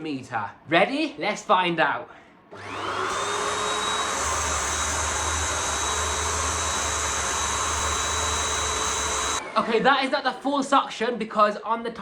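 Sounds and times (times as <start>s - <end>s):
vacuum cleaner motor whine: 2.5s - 10.2s.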